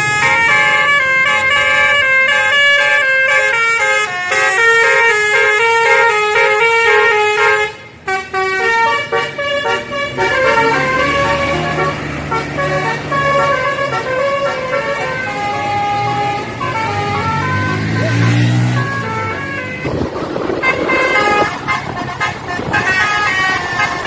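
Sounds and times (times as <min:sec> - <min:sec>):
diesel bus engine revving: 0:00.0 - 0:24.0
musical bus horn melody: 0:00.0 - 0:24.0.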